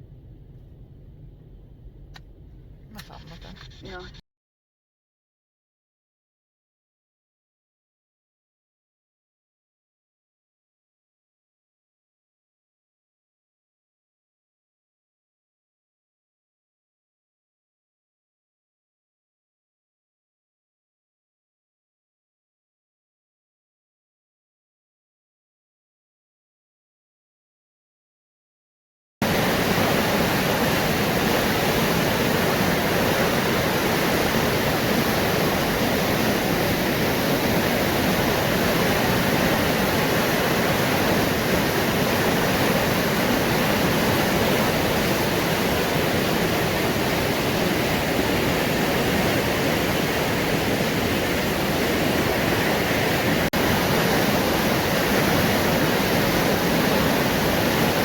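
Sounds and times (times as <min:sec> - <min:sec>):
river water rushing over rapids: 0:29.2 - 0:58.0.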